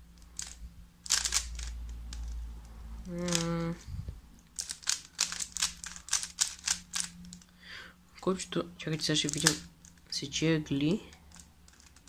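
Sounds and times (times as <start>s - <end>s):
puzzle cube layers clicking: 0.0s - 2.4s, 3.0s - 3.8s, 4.5s - 7.5s, 9.2s - 10.0s.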